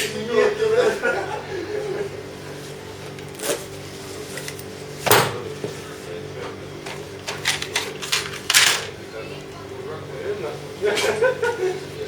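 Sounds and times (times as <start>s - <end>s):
clicks and knocks of handling: 6.8s - 9.0s.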